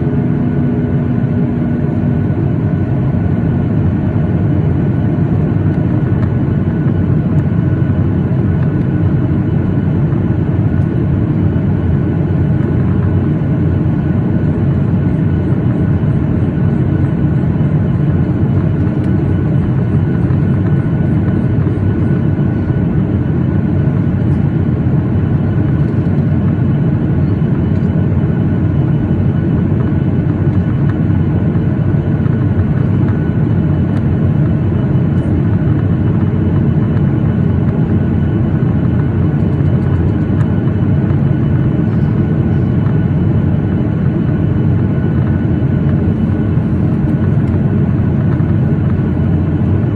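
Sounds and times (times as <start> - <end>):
airliner cabin rumble: 0.0 - 49.9.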